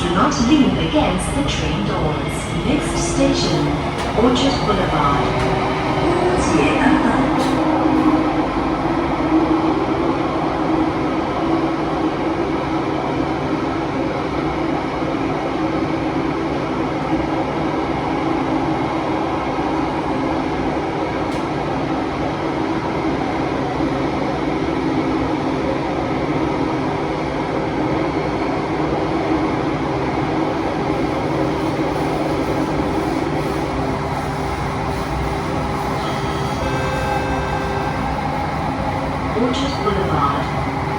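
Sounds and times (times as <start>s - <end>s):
low hum: 0.0s - 11.4s, 30.1s - 40.9s
train wind noise in tunnel: 0.0s - 40.9s.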